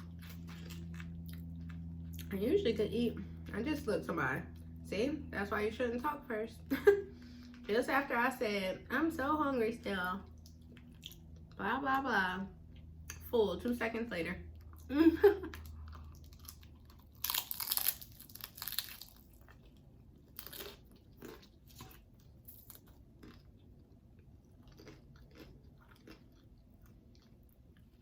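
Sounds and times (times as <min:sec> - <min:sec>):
loud crunches of taco bite: 0:00.0 - 0:01.8, 0:15.5 - 0:28.0
chewing and mouth clicks: 0:00.0 - 0:02.3, 0:10.3 - 0:11.6, 0:15.5 - 0:28.0.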